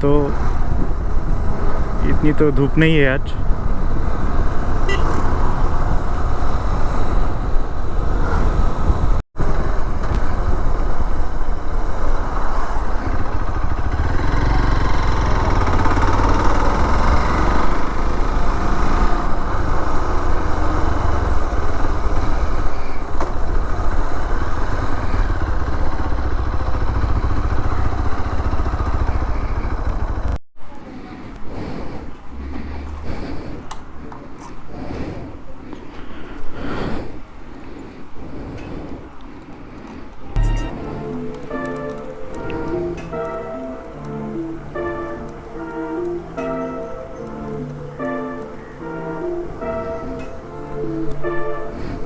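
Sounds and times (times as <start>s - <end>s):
wind on microphone: 0.0s - 2.3s, 3.2s - 14.0s
motorcycle engine cruising: 0.0s - 30.4s, 40.3s - 52.0s.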